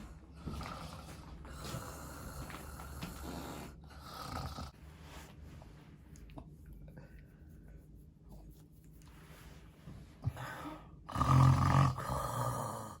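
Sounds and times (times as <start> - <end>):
person imitating snoring: 11.1 - 13.0.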